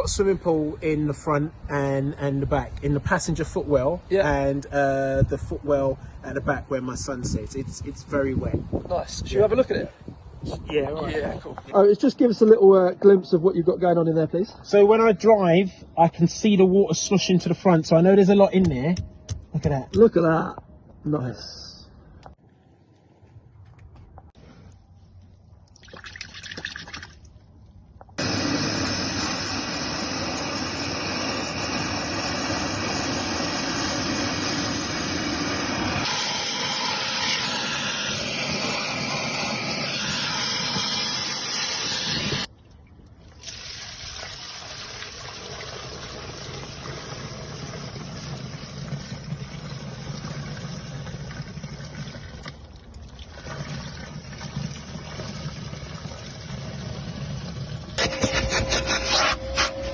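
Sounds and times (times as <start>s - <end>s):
wet vacuum sucking water: 28.2s - 42.5s, 53.2s - 59.9s.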